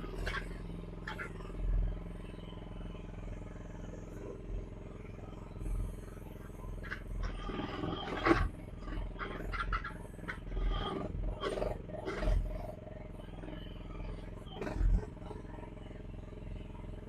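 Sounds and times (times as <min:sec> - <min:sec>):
excavator engine running: 0:00.0 - 0:17.0
hydraulics groaning: 0:06.7 - 0:15.5.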